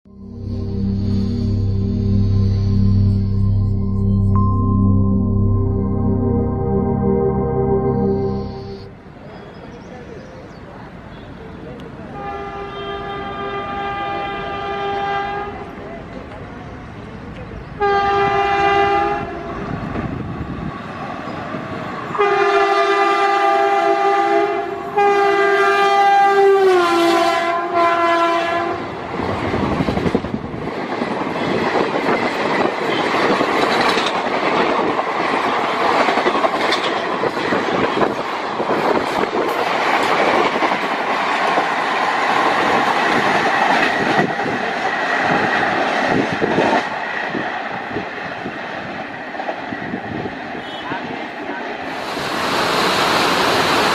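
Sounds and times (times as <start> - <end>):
locomotive horn blasts: 0.1 - 4.4, 12.2 - 15.6, 17.8 - 19.6, 22.1 - 28.9
train coaches clattering past: 26.8 - 53.9.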